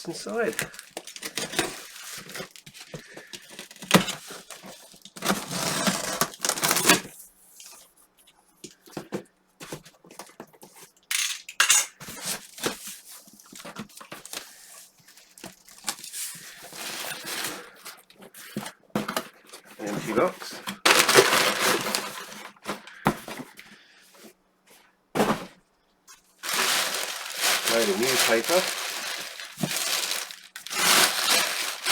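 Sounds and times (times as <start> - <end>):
cardboard tearing and rustling: 0.1 - 7.2, 12.0 - 23.5, 26.4 - 31.9.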